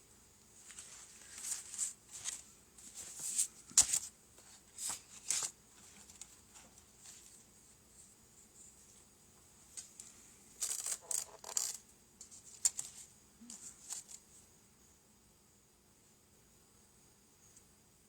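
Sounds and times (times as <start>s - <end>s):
plastic sheets rustling and tapping: 0.6s - 7.4s.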